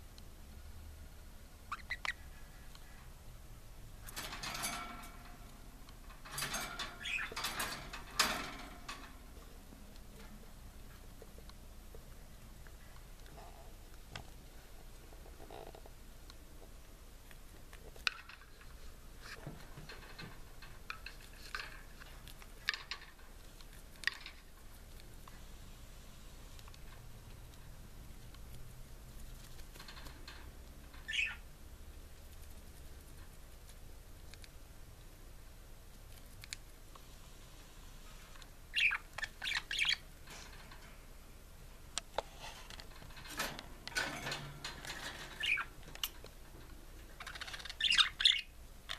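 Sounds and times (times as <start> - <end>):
budgerigar chirping: 1.7 - 2.3, 31.1 - 31.4, 38.7 - 40.0.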